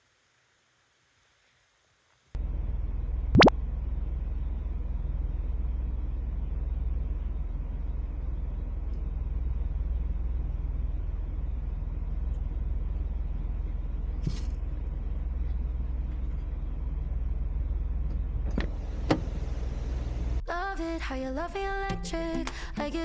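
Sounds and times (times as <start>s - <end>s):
engine and tyres rumbling: 2.4s - 20.5s.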